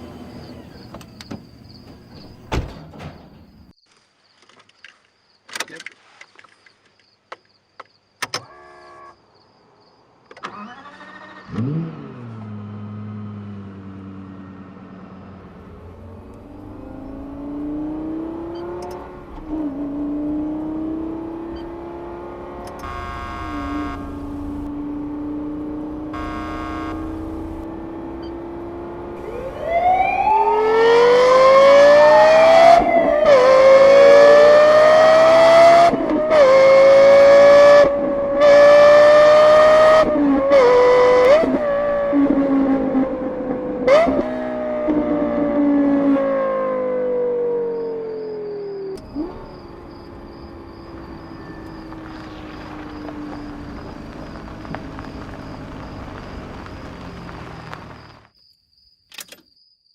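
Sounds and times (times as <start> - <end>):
car engine revving through gears: 10.4 - 58.3.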